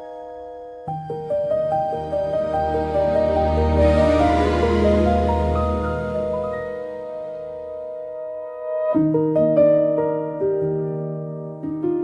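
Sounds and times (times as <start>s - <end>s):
soft piano melody: 0.0s - 12.0s
bass line: 1.5s - 7.8s.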